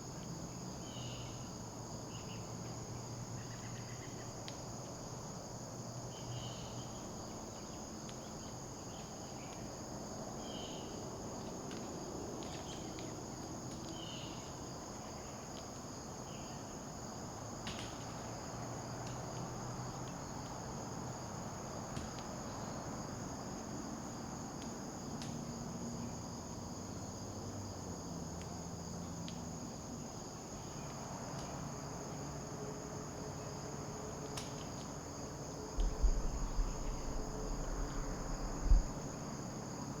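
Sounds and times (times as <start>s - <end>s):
crickets chirping: 0.0s - 40.0s
faint low hum: 35.6s - 40.0s.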